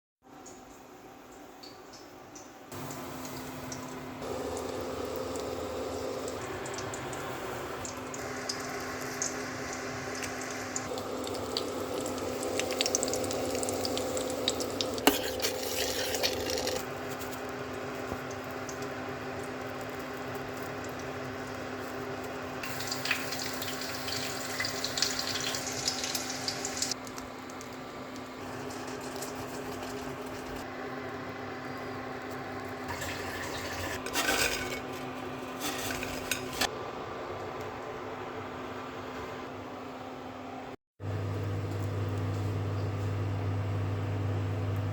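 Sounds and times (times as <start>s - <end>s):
food sizzling in a pan: 4.2s - 17.3s, 18.6s - 27.0s
utensils clinking on cookware: 32.9s - 36.7s.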